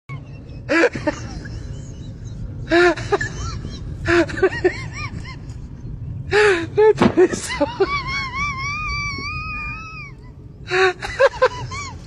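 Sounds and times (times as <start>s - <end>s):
steady low rumble: 0.1s - 12.0s.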